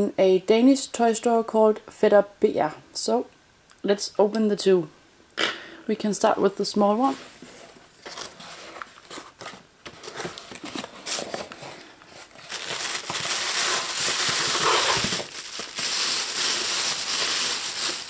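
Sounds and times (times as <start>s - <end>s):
packaging crinkling and rustling: 7.3s - 18.0s.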